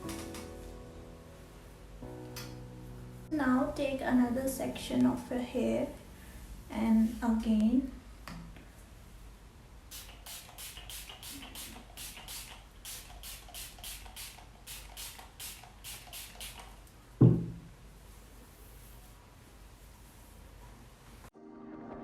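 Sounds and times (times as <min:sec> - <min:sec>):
rhythmic music with shaker ticks: 0:00.0 - 0:00.6, 0:10.0 - 0:16.6.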